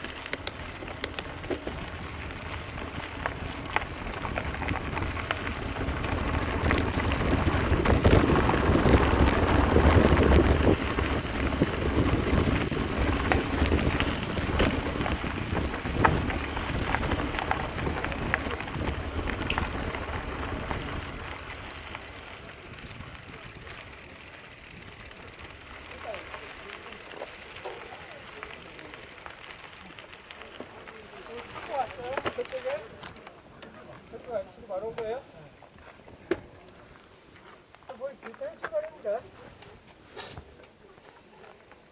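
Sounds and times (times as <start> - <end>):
wind rumbling on microphone: 0.0 - 25.4
bike rattling clicks: 0.0 - 33.8
bike tyres crunching on gravel: 0.0 - 41.9.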